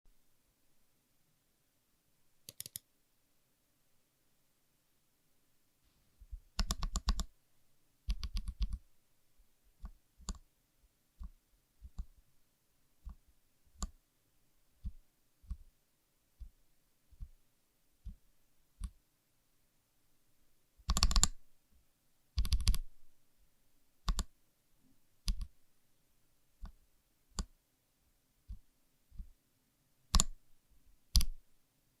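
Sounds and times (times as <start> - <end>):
mechanical keyboard keys clacking: 2.5 - 2.8, 20.9 - 21.3, 22.4 - 22.8.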